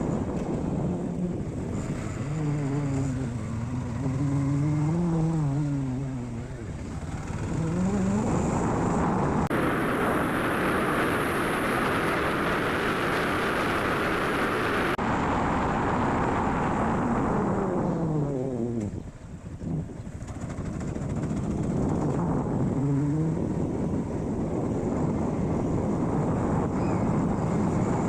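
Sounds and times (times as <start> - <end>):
motorcycle engine: 0.0 - 28.0
rushing wind: 0.0 - 28.0.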